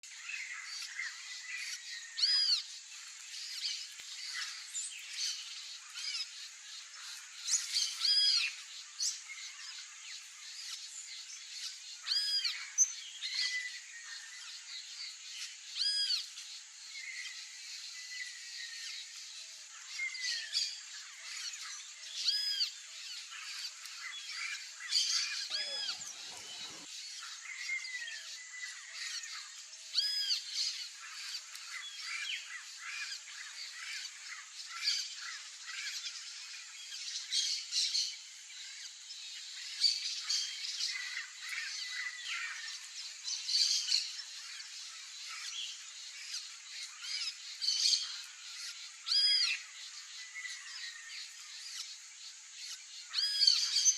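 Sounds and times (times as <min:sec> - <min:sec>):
high-pitched background hiss: 0:00.2 - 0:53.9
parrots squawking: 0:25.5 - 0:26.9.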